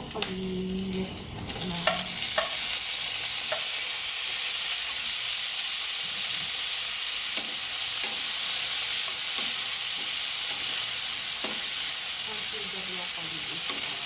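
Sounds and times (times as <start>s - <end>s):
food sizzling in a pan: 0.0s - 14.0s
utensil clicking on a pan: 1.8s - 2.7s, 3.4s - 3.8s, 7.3s - 11.8s.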